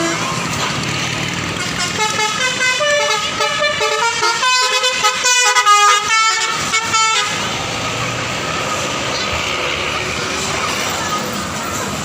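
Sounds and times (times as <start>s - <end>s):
bus musical horn tune: 0.0s - 0.5s, 1.5s - 7.6s.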